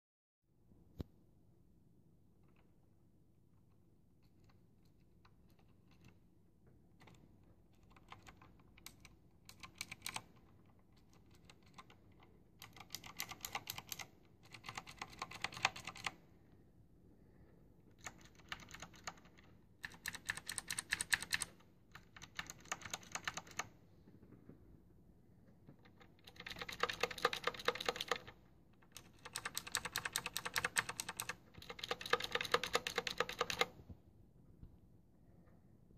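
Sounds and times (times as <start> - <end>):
typing on mechanical keyboard: 4.2 - 6.2, 7.0 - 16.2, 17.9 - 23.8, 25.8 - 33.8.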